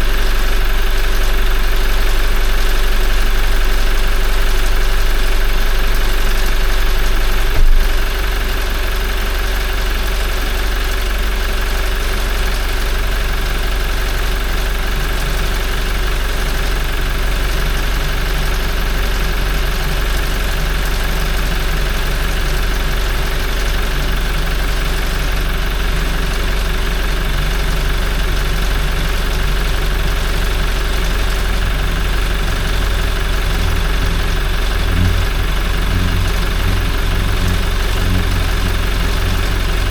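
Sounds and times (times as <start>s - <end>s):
sharp engine knock: 7.5s - 8.2s
diesel engine idling: 12.8s - 39.9s.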